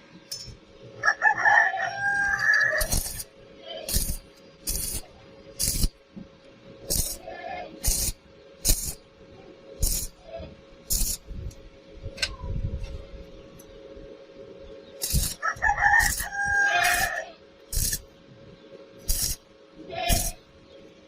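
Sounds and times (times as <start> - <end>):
faint steady hum: 0.0 - 21.0
rooster crowing: 1.0 - 2.9, 15.4 - 17.4.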